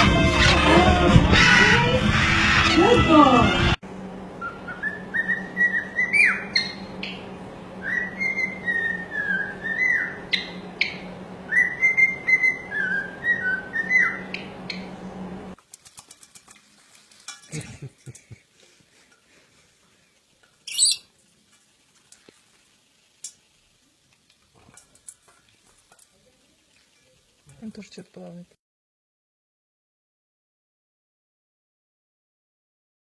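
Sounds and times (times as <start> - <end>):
bird whistling a tune: 4.4 - 6.8, 7.8 - 14.4, 20.7 - 21.0.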